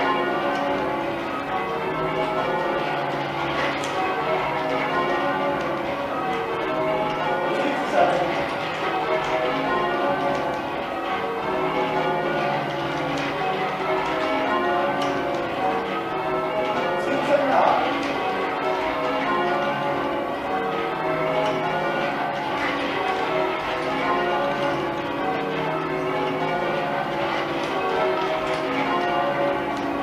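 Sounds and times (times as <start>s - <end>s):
church bells ringing in changes: 0.0s - 30.0s.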